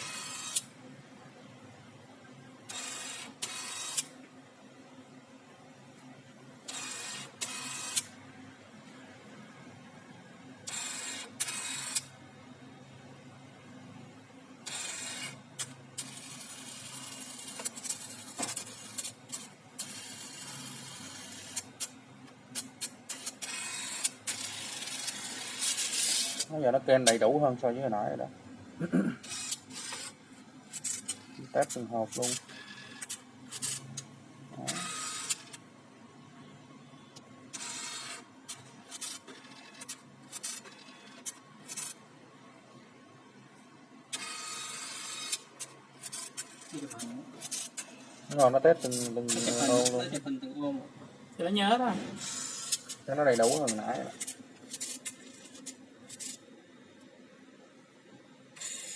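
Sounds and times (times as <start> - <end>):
printer motor whirring: 0.0 - 0.7, 2.6 - 4.2, 6.6 - 8.2, 10.6 - 12.2, 14.6 - 27.6, 29.2 - 35.7, 36.9 - 42.0, 44.1 - 50.3, 52.0 - 56.4, 58.5 - 58.9
printer jerky movements: 29.2 - 35.6, 37.5 - 42.0, 44.1 - 50.3, 51.9 - 56.4.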